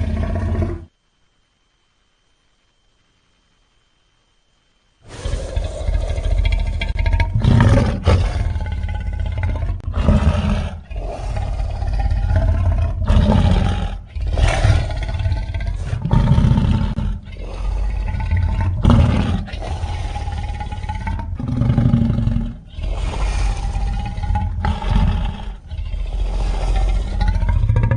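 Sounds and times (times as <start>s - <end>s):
monster growling roars: 5.1s - 27.9s.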